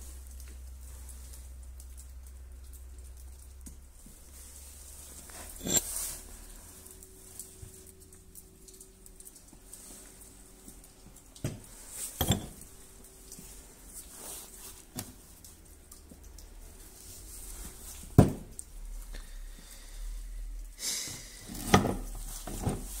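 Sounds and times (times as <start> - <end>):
hard objects knocking and clinking: 5.3 - 5.8, 12.2 - 12.7.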